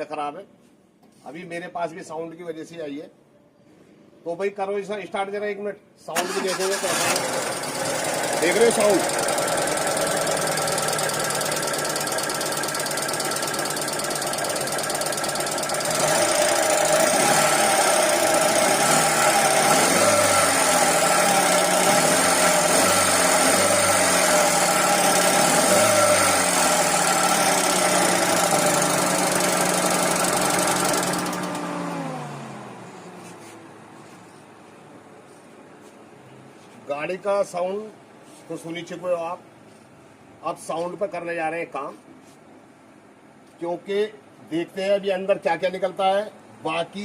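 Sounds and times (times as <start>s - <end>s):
car engine with abnormal noise: 6.2s - 33.7s.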